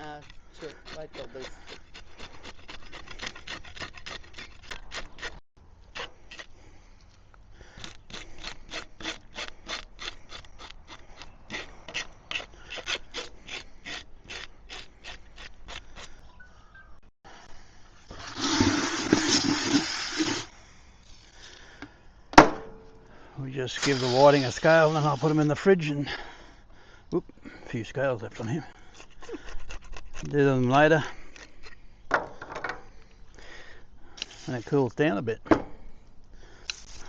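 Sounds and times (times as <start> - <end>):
knife scraping fish scales: 28.9 - 30.5.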